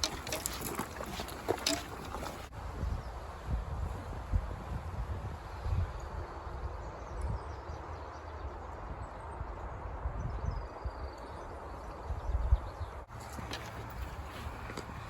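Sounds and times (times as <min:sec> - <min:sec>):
wind buffeting microphone: 0:00.0 - 0:07.7, 0:08.8 - 0:15.0.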